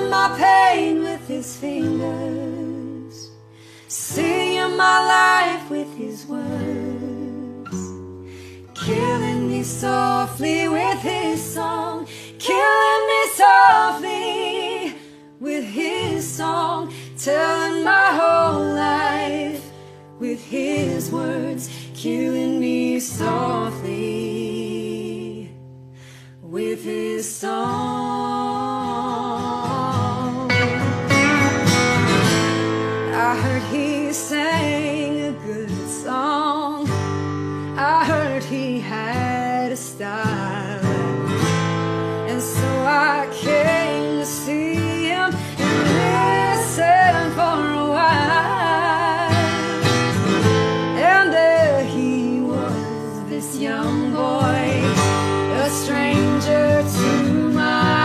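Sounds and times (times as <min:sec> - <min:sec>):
person singing: 0:00.0 - 0:08.0, 0:08.8 - 0:25.5, 0:26.4 - 0:31.0, 0:42.3 - 0:58.0
acoustic guitar: 0:00.0 - 0:58.0.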